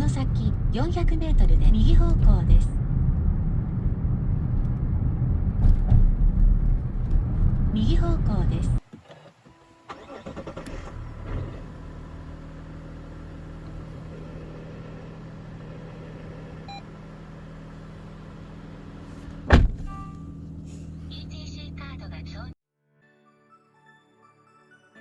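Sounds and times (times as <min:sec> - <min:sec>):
engine and road drone: 0:00.0 - 0:22.6
sharp thump: 0:19.4 - 0:20.0.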